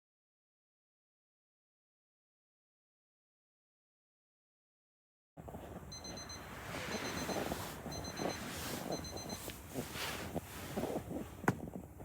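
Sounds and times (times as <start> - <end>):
rustling and handling sounds: 5.5 - 11.9
electronic alarm beeping: 5.9 - 9.6.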